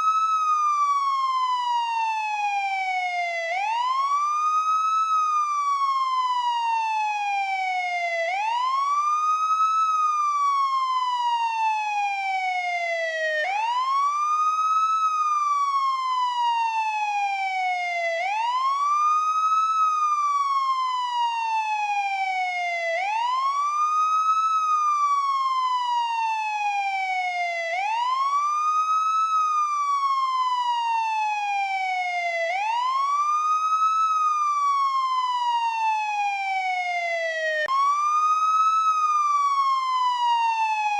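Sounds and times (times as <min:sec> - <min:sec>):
police siren wailing: 0:00.0 - 0:40.9.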